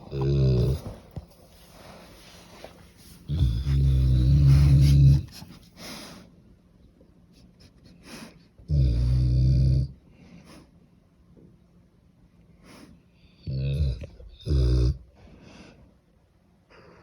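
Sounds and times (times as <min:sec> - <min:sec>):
dog snoring loudly: 0:00.0 - 0:01.1, 0:03.3 - 0:05.3, 0:08.7 - 0:09.9, 0:13.4 - 0:15.0
dog breathing softly: 0:00.7 - 0:06.4.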